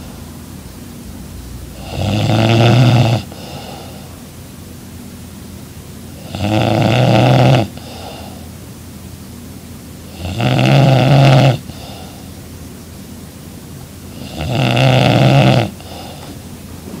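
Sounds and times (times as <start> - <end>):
woman snoring loudly: 1.7 - 4.0, 6.2 - 8.4, 10.1 - 12.2, 14.1 - 16.2
quiet breathing: 3.3 - 4.2, 7.7 - 8.6, 11.6 - 12.4, 15.7 - 17.0.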